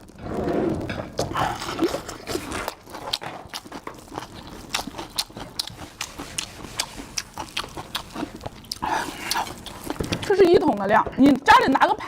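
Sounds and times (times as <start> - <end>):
person chewing and lip-smacking: 1.2 - 10.3.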